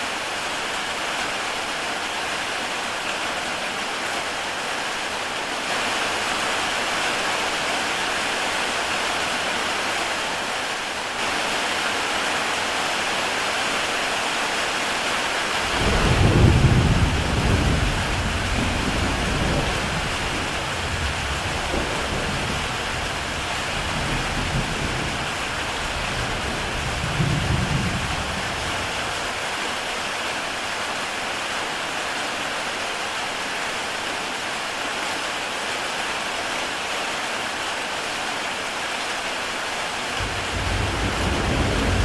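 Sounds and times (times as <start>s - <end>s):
heavy rain on a tile roof: 0.0s - 42.0s
thunder rumbling: 15.6s - 29.0s, 40.2s - 42.0s.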